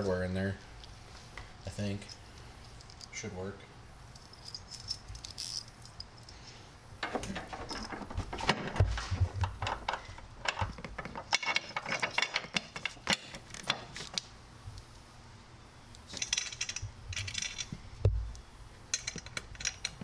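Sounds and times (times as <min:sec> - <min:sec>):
metallic clinks of hardware: 0:16.2 - 0:17.8.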